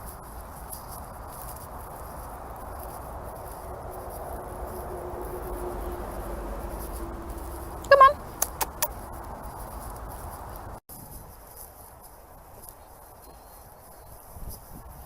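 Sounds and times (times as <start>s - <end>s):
faint steady hum: 0.0s - 10.8s
insects chirring: 0.0s - 10.8s
low outdoor rumble: 0.0s - 10.8s.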